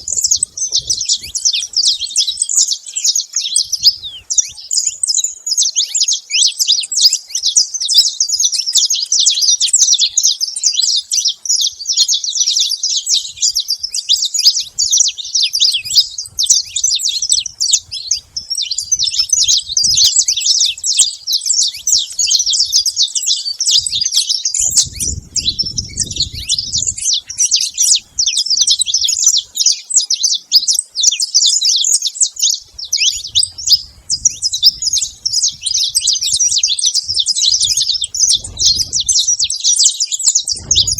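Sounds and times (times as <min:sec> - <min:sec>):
finches chirping: 0:00.0 - 0:40.9
low rumble: 0:37.1 - 0:39.3, 0:40.5 - 0:40.9.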